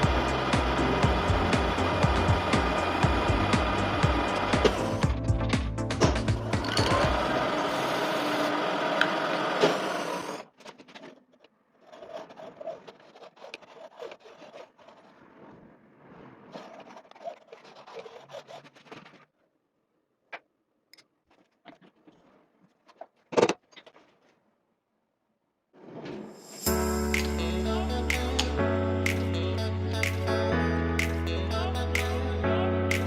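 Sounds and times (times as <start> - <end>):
loud steady lathe noise: 0.0 - 5.0, 6.4 - 10.4
rubbing and scraping on workpiece: 9.7 - 15.6, 16.4 - 19.3.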